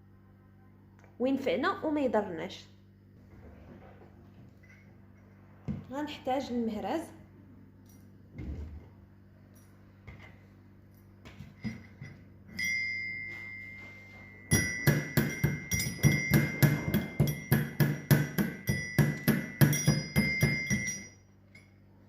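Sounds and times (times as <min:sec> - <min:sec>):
ringing metal clank: 0:11.8 - 0:21.8
metal pestle pounding in mortar: 0:14.5 - 0:21.1.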